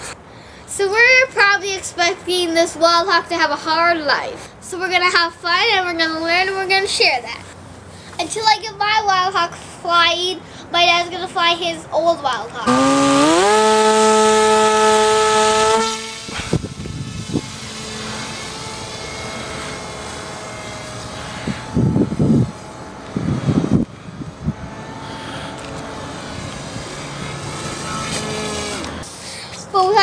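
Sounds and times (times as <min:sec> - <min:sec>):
electric motor and propeller whining: 0:12.6 - 0:29.2.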